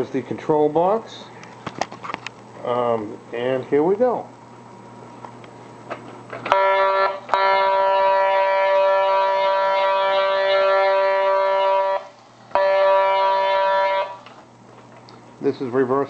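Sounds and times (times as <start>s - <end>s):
toy train horn blasts: 6.4s - 14.3s.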